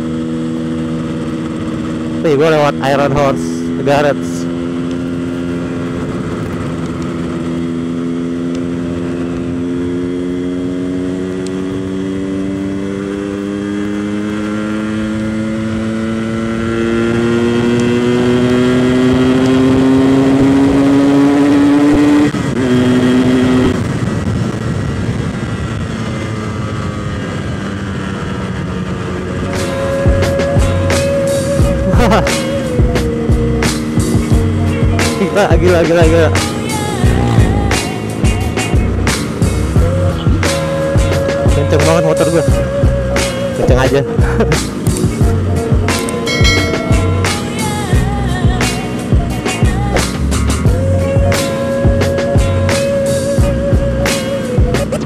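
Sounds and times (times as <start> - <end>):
motorcycle engine accelerating: 0.0 - 55.0
wind and road noise: 0.0 - 55.0.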